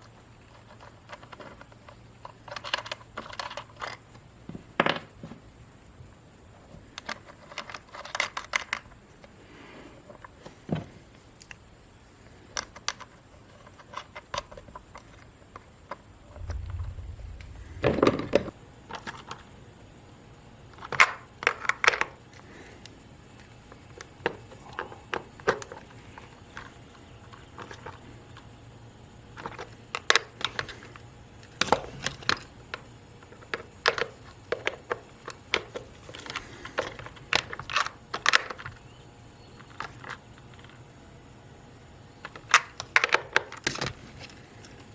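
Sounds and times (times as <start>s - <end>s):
brief low rumble: 16.3s - 18.6s.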